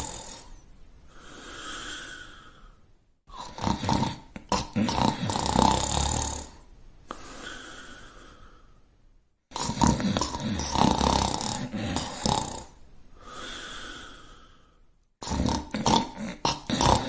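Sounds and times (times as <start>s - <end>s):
loud snoring: 0.0s - 0.6s, 3.3s - 6.6s, 9.5s - 14.5s, 15.2s - 17.0s
soft breath out: 0.0s - 2.9s, 7.1s - 8.9s, 13.1s - 14.9s.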